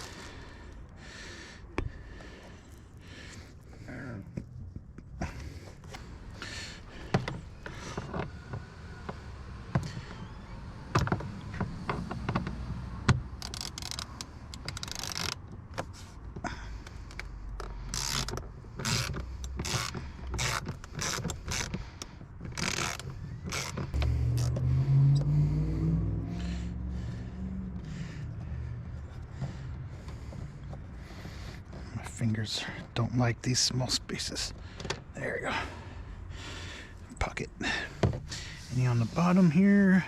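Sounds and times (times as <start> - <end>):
low hum rising in pitch: 24.0 - 28.9.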